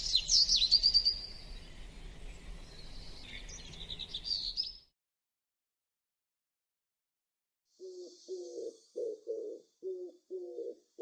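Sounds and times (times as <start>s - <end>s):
dove cooing: 7.8s - 11.0s.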